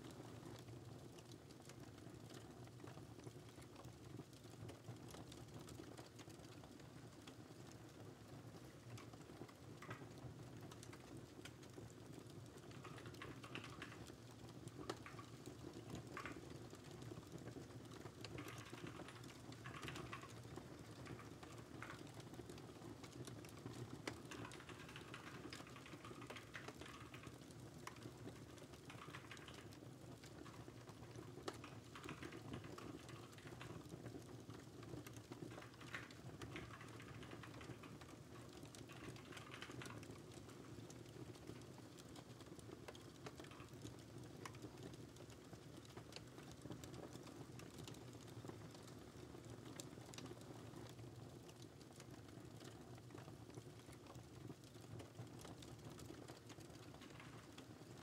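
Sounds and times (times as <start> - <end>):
crackling fireplace: 0.0 - 58.0
computer keyboard typing: 12.7 - 14.2, 18.3 - 20.4, 24.1 - 29.8, 35.1 - 38.2, 38.8 - 40.2.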